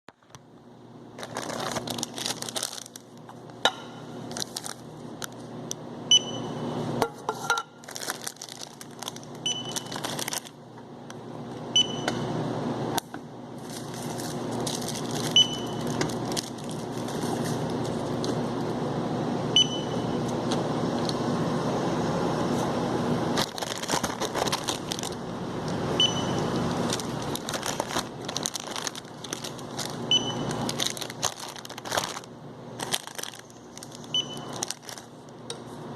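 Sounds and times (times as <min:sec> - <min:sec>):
barcode scanner beeps: 0:09.4 - 0:10.0, 0:15.3 - 0:15.9, 0:19.6 - 0:20.1, 0:26.0 - 0:26.5, 0:30.1 - 0:30.7, 0:34.1 - 0:34.6
rustling and clatter of goods: 0:23.4 - 0:25.2, 0:26.8 - 0:35.1.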